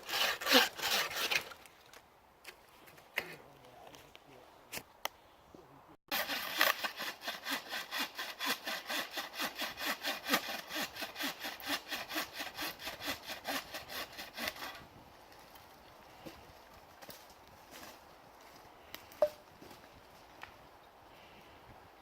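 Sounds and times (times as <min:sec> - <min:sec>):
hand saw cutting wood: 0:00.0 - 0:01.6, 0:06.1 - 0:14.8.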